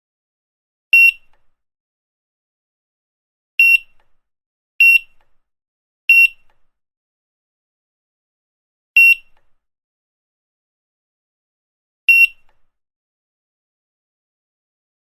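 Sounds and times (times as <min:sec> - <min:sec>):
barcode scanner beeping: 0:12.1 - 0:12.4.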